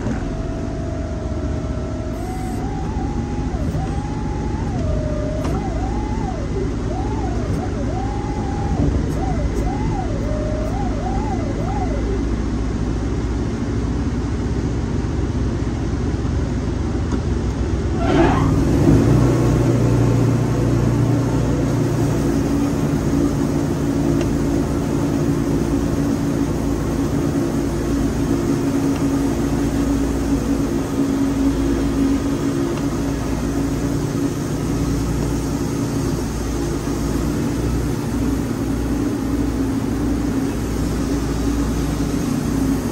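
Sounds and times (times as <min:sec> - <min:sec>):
band sawmill running: 0:00.0 - 0:12.9
faint wavering siren-like tone: 0:00.0 - 0:14.0, 0:18.0 - 0:42.9
rising machine whine: 0:00.0 - 0:15.2, 0:17.9 - 0:42.9.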